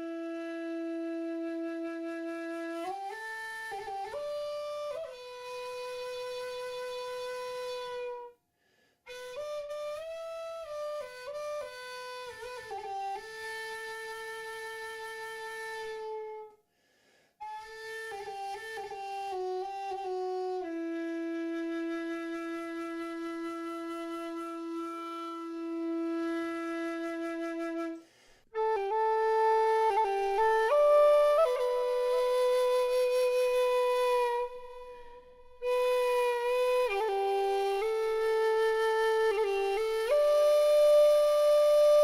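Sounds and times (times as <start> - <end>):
flute-like wind instrument melody: 0.0 - 8.4, 9.1 - 16.6, 17.4 - 42.0.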